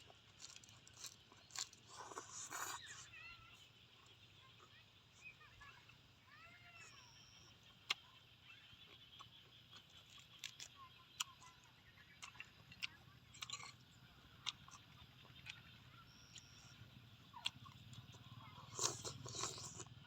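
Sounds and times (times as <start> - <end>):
faint animal calls: 2.6 - 9.6.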